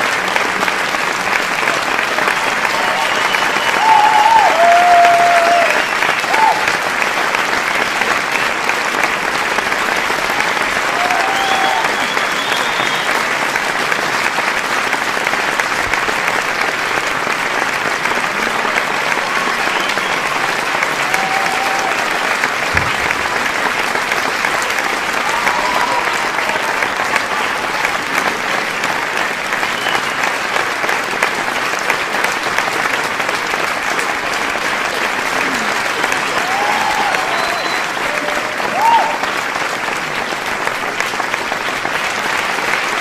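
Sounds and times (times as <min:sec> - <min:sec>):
audience applauding: 0:00.0 - 0:43.0
crowd shouts: 0:02.6 - 0:06.7, 0:10.9 - 0:13.0, 0:21.0 - 0:22.3, 0:25.2 - 0:27.0, 0:36.3 - 0:39.3.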